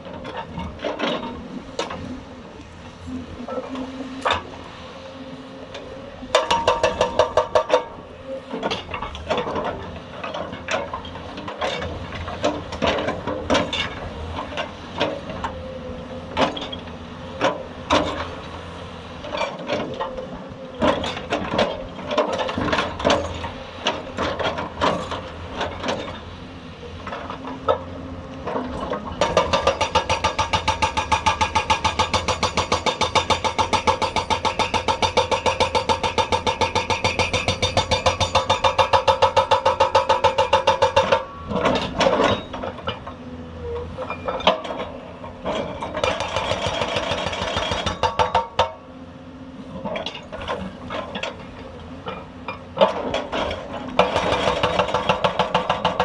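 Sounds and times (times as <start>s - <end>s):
hydraulic breaker hammering rock: 6.3s - 8.0s, 27.1s - 43.1s, 44.0s - 48.8s, 49.8s - 56.0s.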